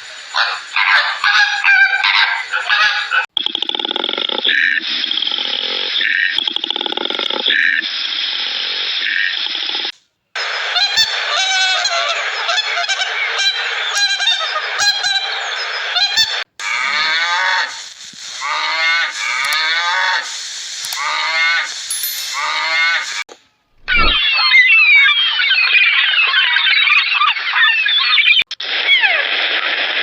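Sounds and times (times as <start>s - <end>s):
geese honking: 0.4s - 3.2s.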